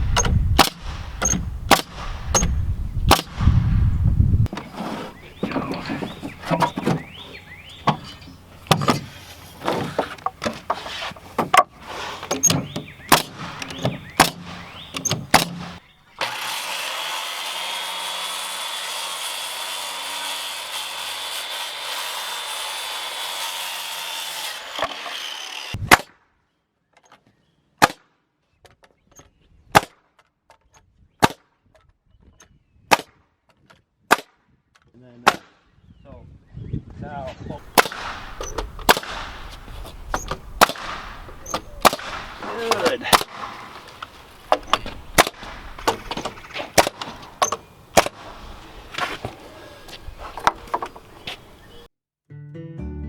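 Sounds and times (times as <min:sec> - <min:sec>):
nailing strikes: 0:00.2 - 0:02.5, 0:07.8 - 0:16.3, 0:37.6 - 0:49.4
power saw cutting: 0:15.1 - 0:25.8, 0:37.7 - 0:51.6.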